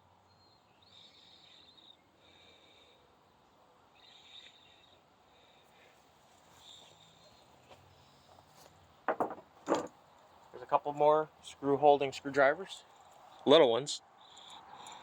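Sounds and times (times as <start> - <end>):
faint high chirping: 0.2 - 2.9.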